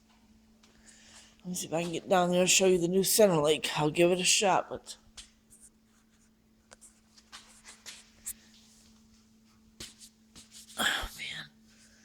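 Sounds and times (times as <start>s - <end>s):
steady faint hum: 0.0s - 12.0s
faint rustling and scraping: 5.2s - 10.8s.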